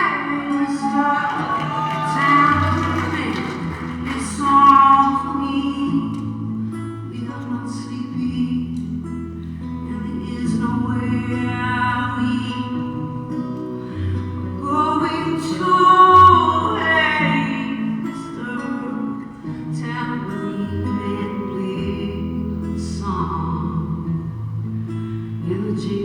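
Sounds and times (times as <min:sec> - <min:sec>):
guitar: 0:00.0 - 0:26.0
live folk-rock band: 0:00.0 - 0:26.0.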